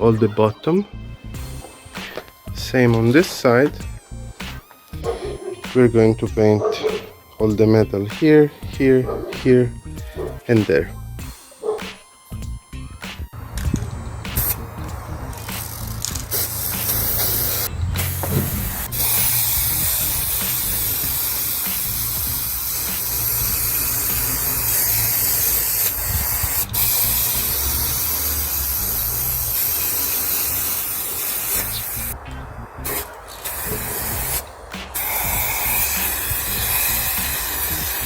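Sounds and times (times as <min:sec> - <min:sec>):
aerosol spray can hissing: 0:13.4 - 0:32.2, 0:32.8 - 0:38.0.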